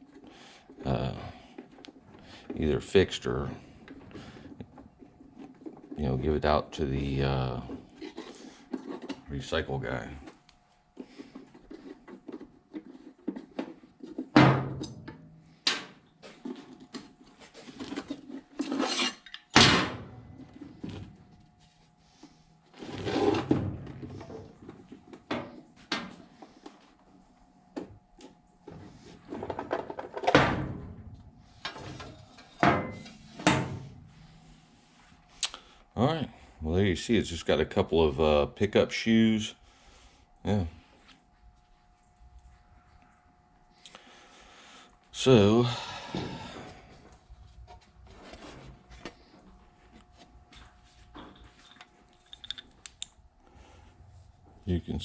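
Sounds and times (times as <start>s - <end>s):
faint steady hum: 0.0s - 55.0s.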